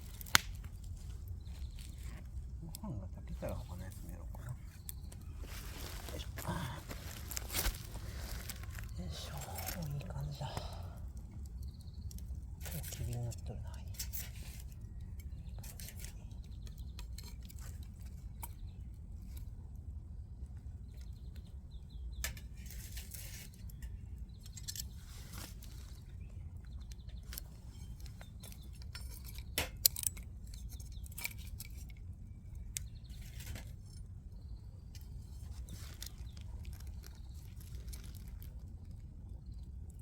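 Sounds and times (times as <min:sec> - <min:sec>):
low steady rumble: 0:00.0 - 0:16.9.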